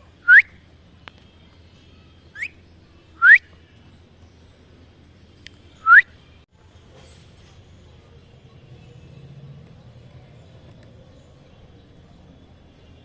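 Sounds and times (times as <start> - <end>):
parrot whistling: 5.8 - 6.1.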